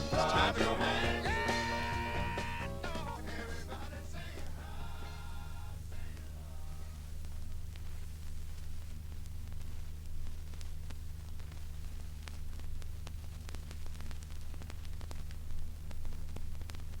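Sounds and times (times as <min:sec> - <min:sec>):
low hum: 0:00.0 - 0:17.0
vinyl surface hiss: 0:00.0 - 0:17.0
vinyl crackle and pops: 0:02.7 - 0:17.0.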